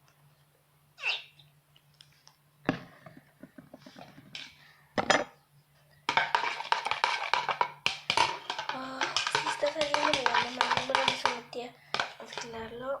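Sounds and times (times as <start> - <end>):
spoon scraping a bowl: 6.1 - 12.7.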